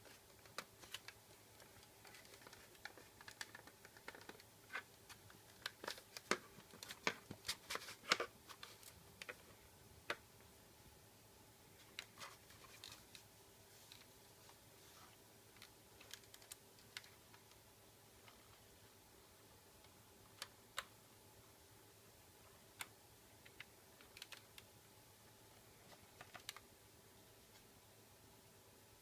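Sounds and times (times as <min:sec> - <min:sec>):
faint clicks and taps: 0:00.0 - 0:10.3, 0:15.5 - 0:17.6, 0:19.8 - 0:21.0, 0:22.7 - 0:24.7, 0:25.5 - 0:26.7.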